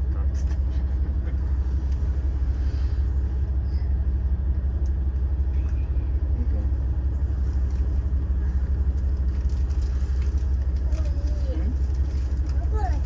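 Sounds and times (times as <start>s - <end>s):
diesel railcar engine idling: 0.0s - 13.0s.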